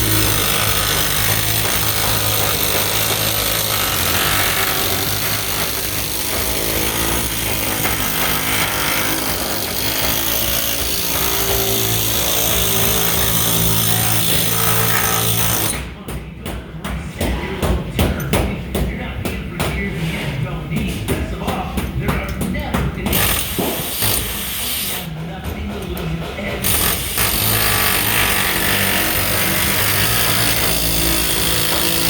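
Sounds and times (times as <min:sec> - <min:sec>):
pneumatic air hammer rattling: 0:00.0 - 0:15.8, 0:23.1 - 0:25.1, 0:26.6 - 0:32.0
sharp knocks on metal: 0:00.0 - 0:19.8.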